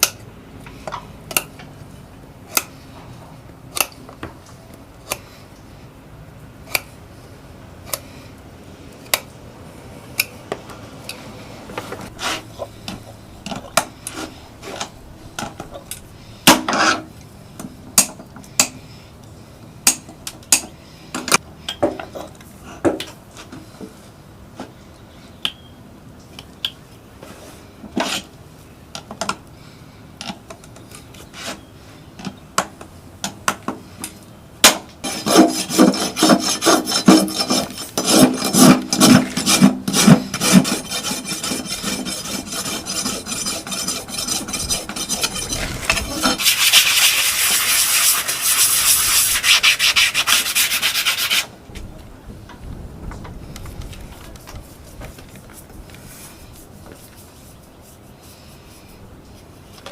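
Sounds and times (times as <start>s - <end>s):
rasp filing a hoof: 16.6s - 17.1s, 35.0s - 51.5s.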